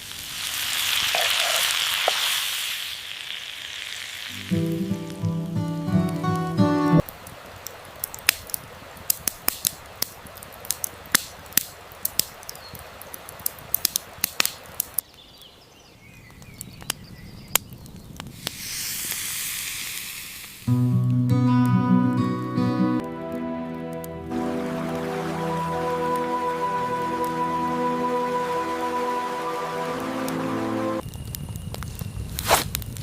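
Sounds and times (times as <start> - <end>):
high hissing rush: 0.0 - 5.8, 18.4 - 20.7
campfire crackling and popping: 0.0 - 15.4, 16.0 - 22.2, 23.0 - 33.0
music: 4.3 - 7.0, 20.7 - 31.0.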